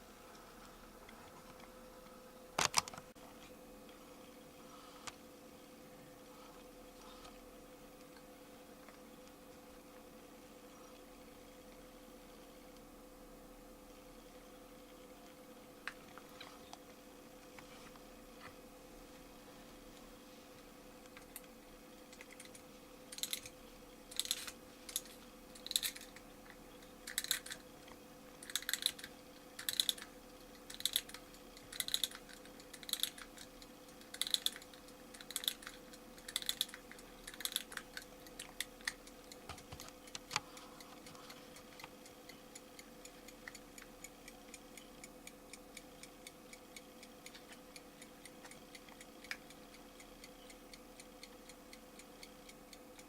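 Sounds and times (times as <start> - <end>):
clock ticking faintly: 21.1 - 53.0
alarm clock winding ratchet clicks: 22.1 - 26.2, 27.0 - 27.6, 28.4 - 40.4.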